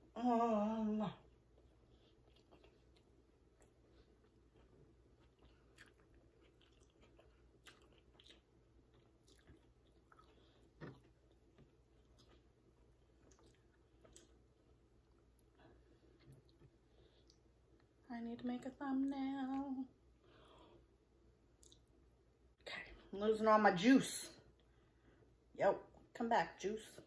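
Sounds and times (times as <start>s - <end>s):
mouth chewing sounds: 1.5s - 14.5s, 21.6s - 21.9s.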